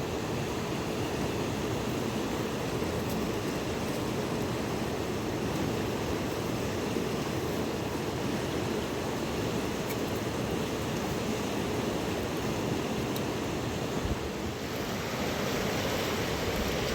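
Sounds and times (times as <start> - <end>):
river water rushing: 13.4 - 16.9.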